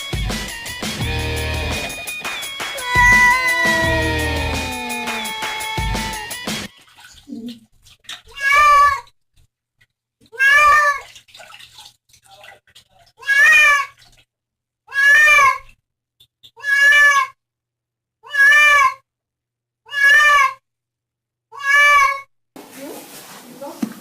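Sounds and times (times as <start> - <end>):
cat meowing: 2.7 - 6.4, 8.3 - 9.1, 10.4 - 11.0, 13.2 - 13.9, 14.9 - 15.7, 16.6 - 17.4, 18.2 - 19.0, 19.9 - 20.6, 21.5 - 22.3.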